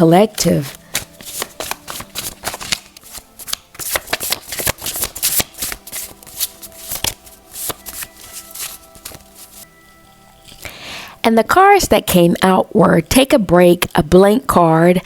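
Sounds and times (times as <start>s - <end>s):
cards being shuffled: 0.2s - 9.6s.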